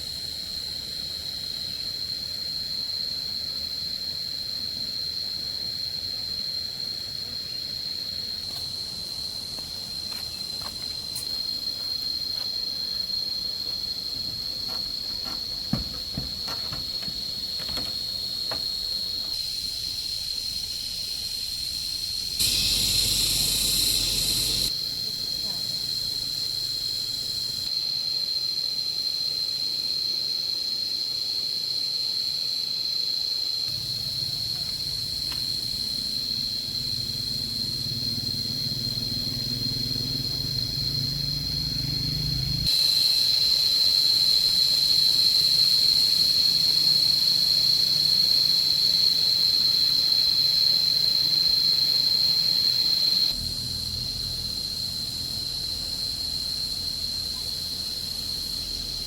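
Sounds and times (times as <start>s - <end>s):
high-pitched insect chorus: 0.0s - 59.0s
low hum: 22.4s - 24.7s.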